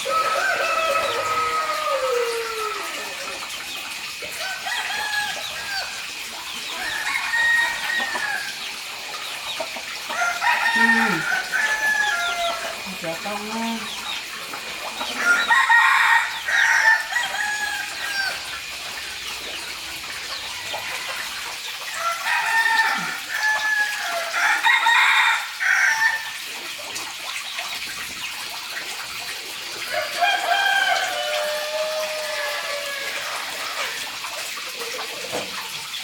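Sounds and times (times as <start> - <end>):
rooster crowing: 0.0 - 3.4, 4.3 - 6.2, 6.8 - 8.6, 10.1 - 13.9, 15.1 - 18.6, 20.4 - 26.4, 29.9 - 34.0
chickens clucking: 0.0 - 24.4, 26.5 - 36.0.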